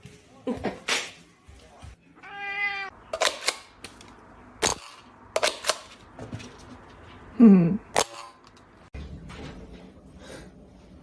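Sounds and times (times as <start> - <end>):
cat meowing: 2.2 - 3.0.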